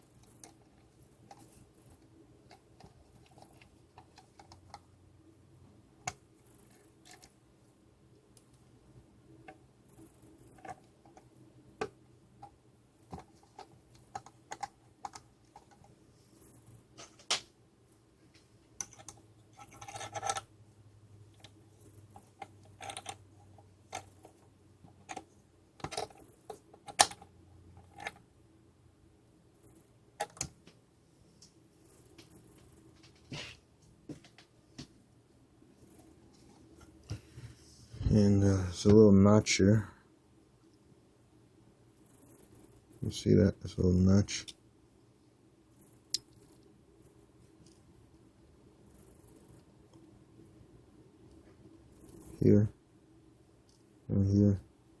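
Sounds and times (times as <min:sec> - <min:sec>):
plastic parts clattering: 0:22.2 - 0:23.2.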